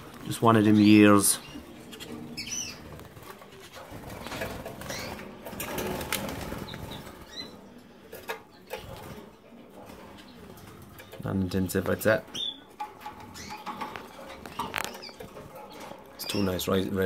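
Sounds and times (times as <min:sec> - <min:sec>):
birds fluttering in cage: 0:00.0 - 0:17.0
high bird chirps: 0:12.3 - 0:16.6.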